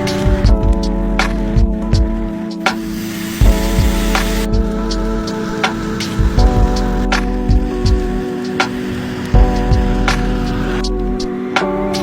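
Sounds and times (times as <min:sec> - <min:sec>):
music with steady drum beat: 0:00.0 - 0:12.0
hiss: 0:02.7 - 0:10.8.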